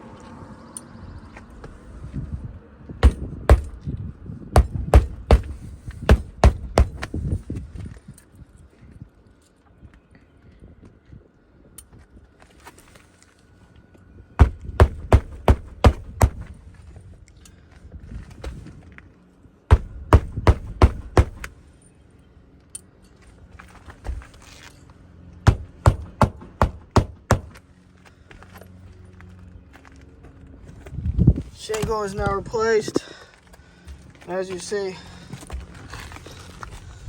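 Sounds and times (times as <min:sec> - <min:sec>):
hammer striking roofing nails: 0:03.0 - 0:03.8, 0:04.6 - 0:07.1, 0:14.4 - 0:16.5, 0:19.7 - 0:21.5, 0:25.5 - 0:27.6.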